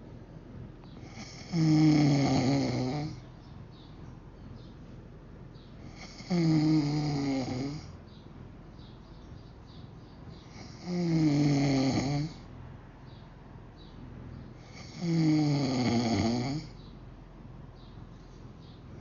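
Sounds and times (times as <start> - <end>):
person snoring heavily: 1.0 - 3.2, 5.9 - 7.9, 10.5 - 12.4, 14.6 - 16.8
quiet breathing: 4.8 - 8.0, 10.4 - 12.5, 14.5 - 16.8, 18.1 - 19.0.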